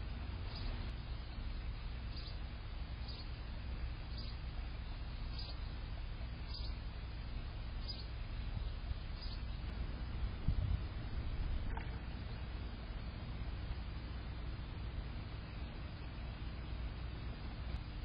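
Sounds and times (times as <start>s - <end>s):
low background rumble: 0.0s - 18.0s
bird chip calls: 0.5s - 1.4s, 2.0s - 2.4s, 3.0s - 3.4s, 4.0s - 4.5s, 5.1s - 6.9s, 7.8s - 9.6s.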